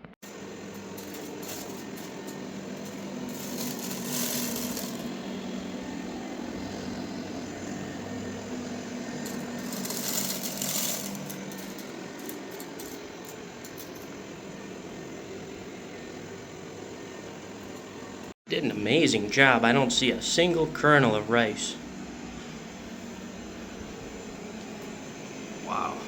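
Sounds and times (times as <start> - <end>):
rice grains rattling: 0.2 - 6.0, 9.0 - 14.1
robot vacuum motor humming: 0.2 - 16.7.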